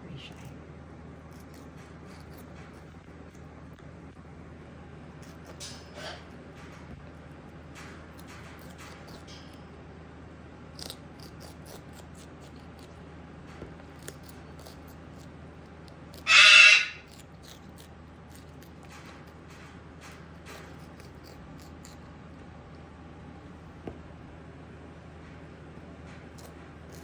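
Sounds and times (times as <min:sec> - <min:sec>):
beak crunching food: 0:00.3 - 0:03.9, 0:05.1 - 0:09.6, 0:10.6 - 0:22.9, 0:25.6 - 0:27.0
cockatoo squawk: 0:16.2 - 0:17.2.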